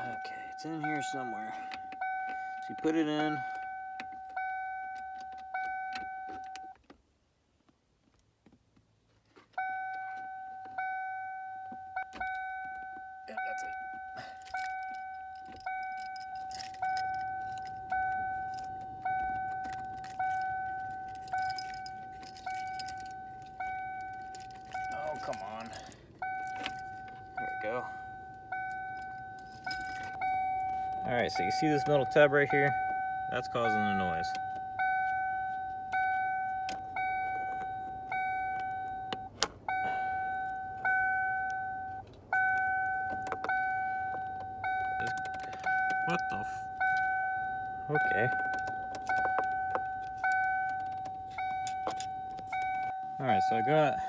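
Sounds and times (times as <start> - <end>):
car door warning chime: 0.0 - 6.9, 9.5 - 54.0
keys clicking and rattling: 11.9 - 54.0.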